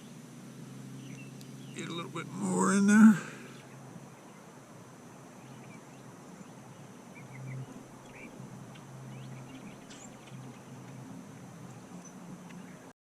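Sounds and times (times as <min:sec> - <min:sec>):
steady low hum: 0:00.0 - 0:12.9
bird chirps: 0:01.0 - 0:02.4.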